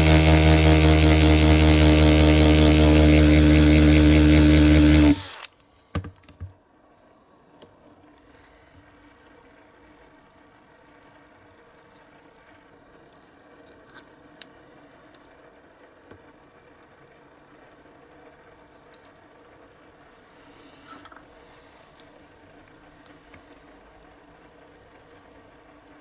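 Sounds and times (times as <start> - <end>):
light clicks and taps: 18.9 - 19.3.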